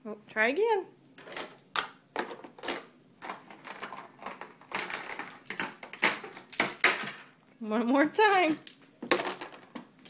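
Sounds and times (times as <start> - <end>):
toys clattering and rattling: 1.2 - 7.3, 8.5 - 9.8.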